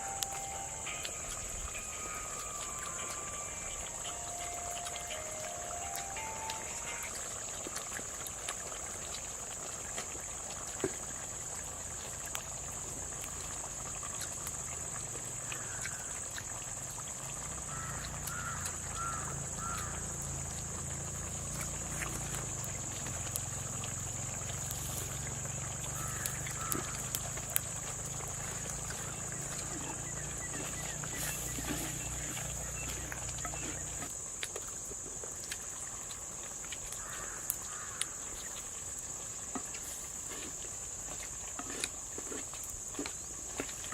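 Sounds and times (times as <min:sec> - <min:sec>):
insects droning: 0:00.0 - 0:43.9
short chirping calls: 0:28.6 - 0:34.1.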